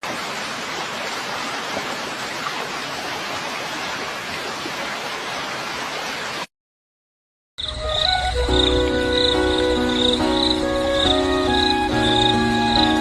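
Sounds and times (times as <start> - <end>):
water rushing: 0.0 - 6.5.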